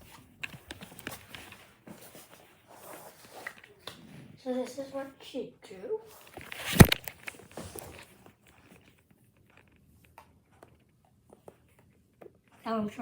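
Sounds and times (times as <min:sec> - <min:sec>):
rustling: 0:06.1 - 0:09.0.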